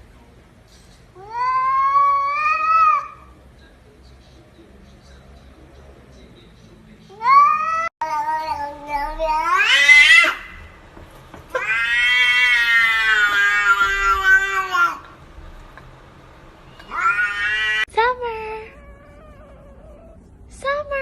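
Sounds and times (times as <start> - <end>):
cat yowling: 1.2 - 3.3, 7.1 - 10.8, 11.5 - 15.2, 16.8 - 20.4.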